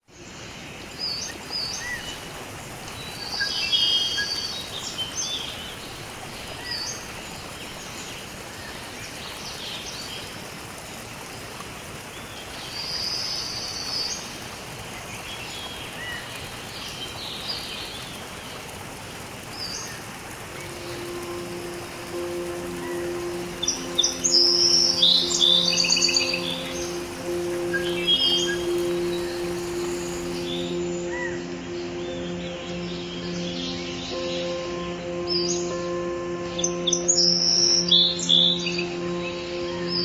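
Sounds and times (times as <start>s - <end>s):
birds chirping and trilling: 0.2s - 10.8s, 19.4s - 40.0s
steady outdoor rushing noise: 13.9s - 37.0s.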